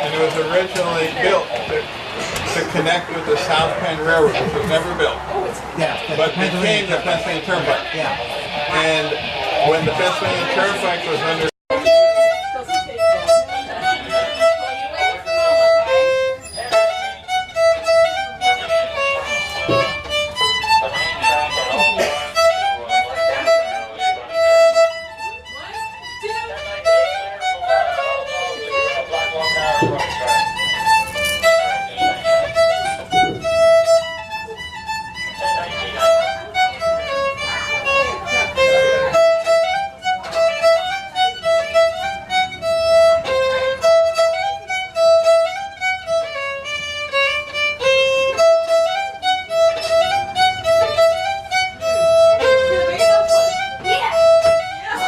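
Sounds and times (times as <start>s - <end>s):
fiddle tune: 0.0s - 55.0s
violin playing a melody: 0.0s - 55.0s.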